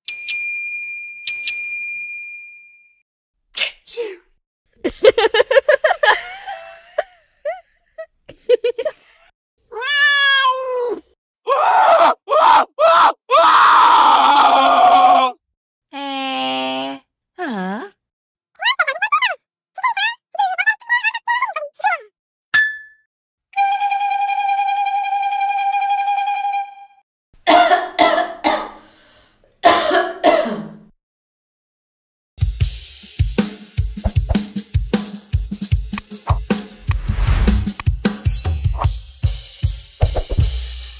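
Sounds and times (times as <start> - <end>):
cat-like meow: 9.7 - 11.1
long harsh cry: 11.5 - 15.4
person coughing: 27.5 - 28.8, 29.6 - 30.8.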